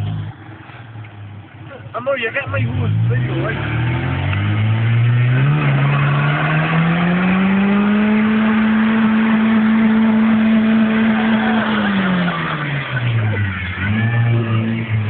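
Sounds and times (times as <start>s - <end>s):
car engine revving: 0.0s - 15.0s.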